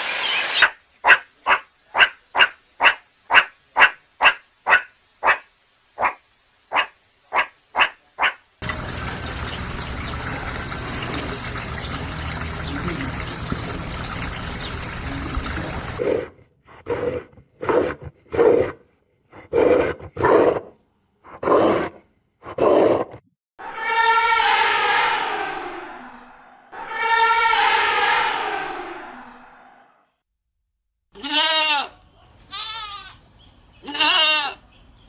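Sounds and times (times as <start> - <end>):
rushing water noise: 0.0 - 0.8, 8.6 - 16.0.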